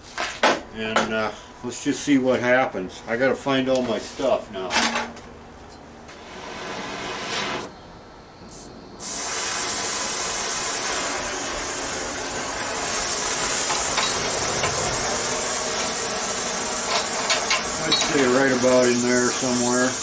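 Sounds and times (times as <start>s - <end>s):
torch flame hissing: 6.1s - 7.7s, 8.5s - 20.0s
gas torch lighting pop: 8.5s - 19.6s.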